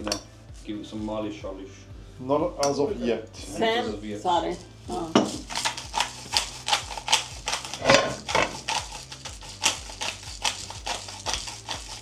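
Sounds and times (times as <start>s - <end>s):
kitchen utensils clicking and knocking: 5.1s - 12.0s.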